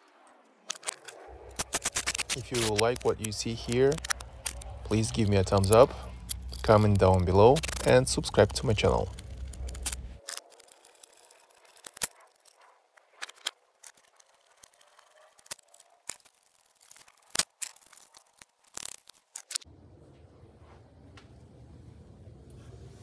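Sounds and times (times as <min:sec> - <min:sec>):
tools and engine parts clicking: 0:00.7 - 0:19.6.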